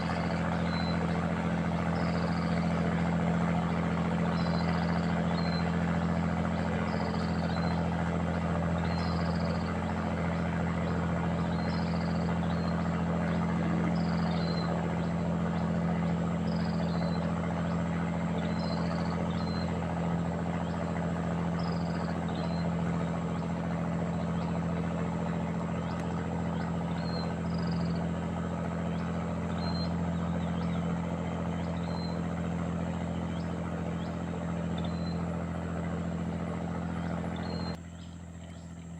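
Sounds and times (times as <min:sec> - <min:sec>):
low motor drone: 0:00.0 - 0:38.9.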